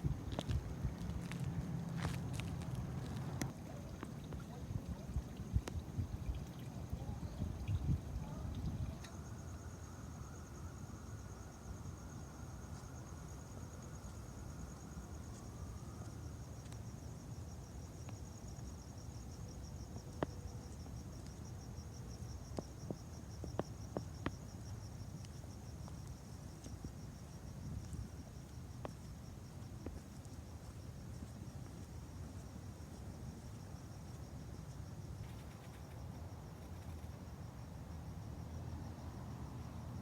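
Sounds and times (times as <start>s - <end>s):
low outdoor rumble: 0.0s - 9.6s
crickets trilling: 0.0s - 40.0s.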